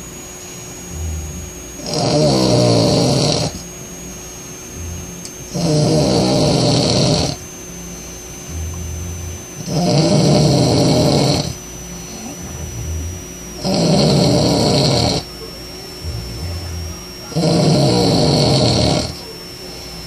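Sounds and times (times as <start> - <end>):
low rumble of breath: 0.8 - 1.7, 4.7 - 5.3, 8.1 - 9.6, 11.9 - 13.6, 16.0 - 17.2
man snoring loudly: 0.8 - 3.6, 4.8 - 7.4, 8.4 - 15.3, 16.0 - 19.2.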